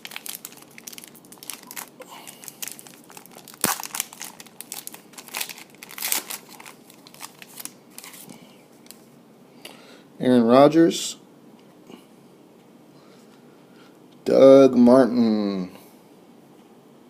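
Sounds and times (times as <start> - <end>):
plastic wrapper crackling: 0.0 - 9.0.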